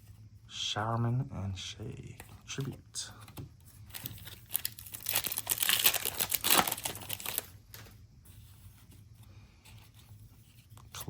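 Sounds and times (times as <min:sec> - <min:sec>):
faint handling noise: 0:02.0 - 0:11.0
plastic wrapper tearing and crinkling: 0:03.9 - 0:07.9.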